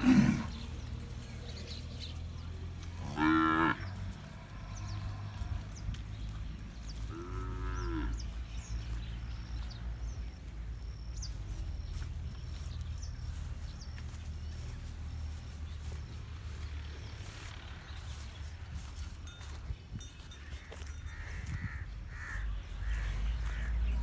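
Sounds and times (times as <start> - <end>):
bull mooing: 2.9 - 5.6, 7.1 - 8.2.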